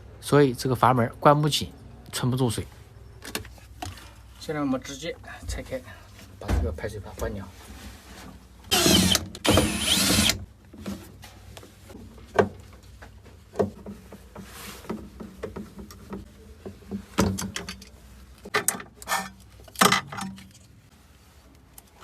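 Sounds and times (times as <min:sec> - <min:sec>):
power screwdriver whirring: 0:08.7 - 0:10.4
clicks and knocks of hard parts: 0:12.3 - 0:20.6.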